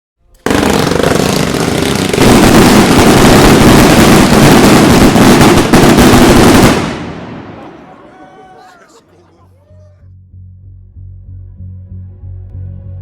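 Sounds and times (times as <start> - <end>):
firework fountain hissing and crackling: 0.6 - 7.1.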